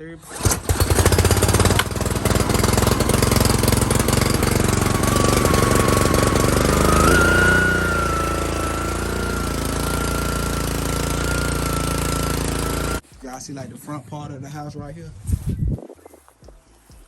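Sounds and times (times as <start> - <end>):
small engine running: 0.2 - 13.0.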